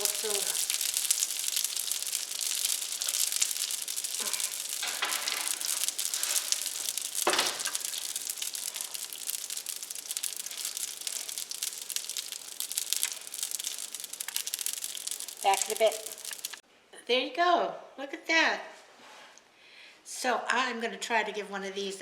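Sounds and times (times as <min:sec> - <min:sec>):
dough sizzling in a pan: 0:00.0 - 0:16.6.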